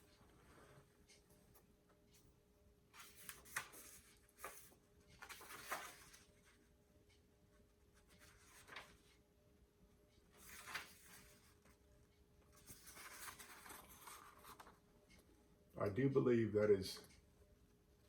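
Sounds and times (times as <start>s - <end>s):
book pages rustling: 2.9s - 6.7s, 8.0s - 9.2s, 10.3s - 11.8s, 12.5s - 14.8s.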